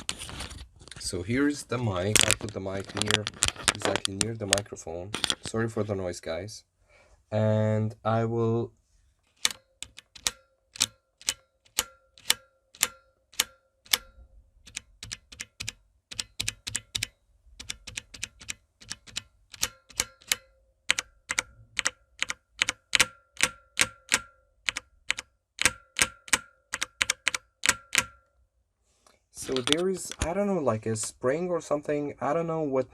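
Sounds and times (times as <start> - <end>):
mechanical keyboard typing: 2.1 - 4.6, 9.4 - 28.2, 29.4 - 30.3
metallic spring ring: 9.5 - 14.3.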